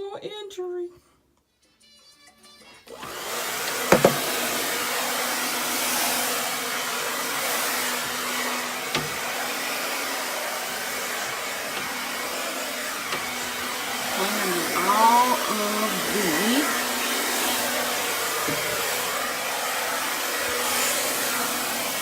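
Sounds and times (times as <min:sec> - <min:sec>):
vacuum cleaner running: 0:02.9 - 0:22.0
vacuum cleaner knocking: 0:03.4 - 0:22.0.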